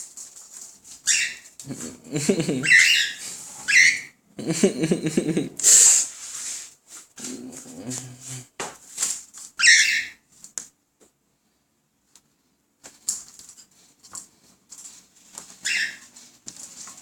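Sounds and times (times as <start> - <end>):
cockatiel harsh call: 1.1 - 1.4, 2.6 - 4.2, 9.6 - 10.2, 15.6 - 16.1.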